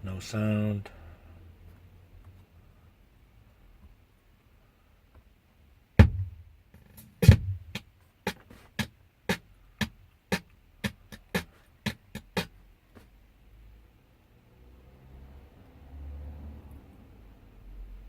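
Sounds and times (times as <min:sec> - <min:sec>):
music with drum beat from car stereo: 0:06.0 - 0:06.4, 0:07.0 - 0:12.5.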